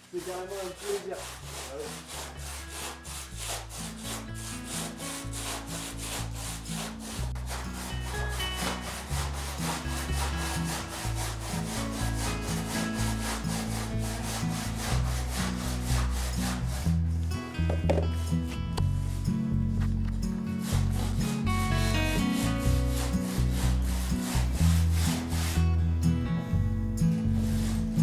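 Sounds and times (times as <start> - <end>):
handsaw cutting stone: 0.0 - 17.0, 20.6 - 25.8, 27.1 - 28.0
background music with bass line: 2.5 - 28.0.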